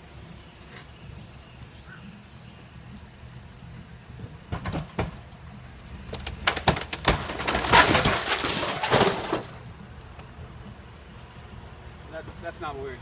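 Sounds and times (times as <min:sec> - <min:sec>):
wooden framing cracking and crashing: 0:05.9 - 0:09.6.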